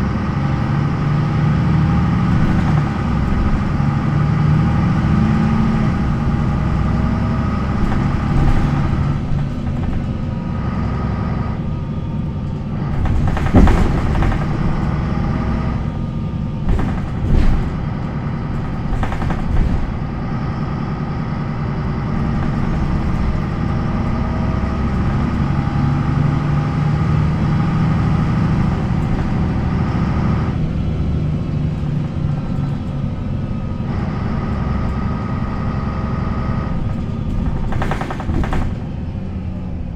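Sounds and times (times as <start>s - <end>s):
sharp knocks and rattles: 0.0s - 39.8s
diesel bus engine running: 0.0s - 39.9s.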